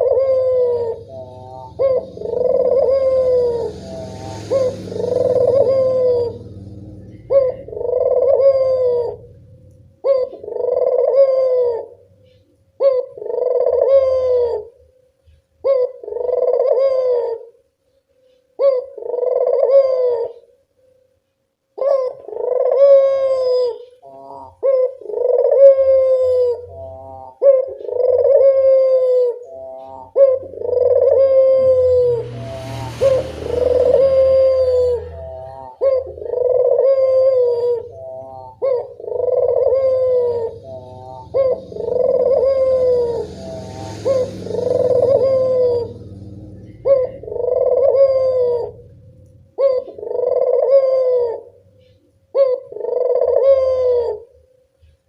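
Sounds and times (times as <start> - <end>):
dove cooing: 0.0 - 17.6, 18.2 - 20.6, 21.8 - 55.0
hiss: 3.2 - 6.5, 42.0 - 45.6.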